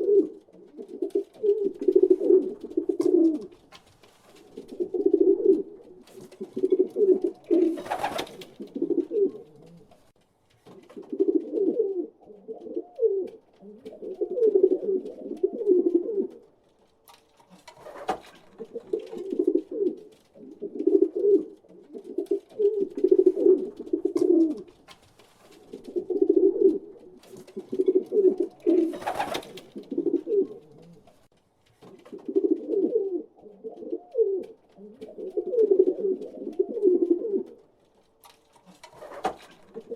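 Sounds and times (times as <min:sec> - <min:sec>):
pigeons cooing: 0:00.0 - 0:03.7, 0:04.4 - 0:10.0, 0:10.9 - 0:16.5, 0:17.8 - 0:24.8, 0:25.6 - 0:31.2, 0:32.0 - 0:37.7, 0:38.9 - 0:39.9.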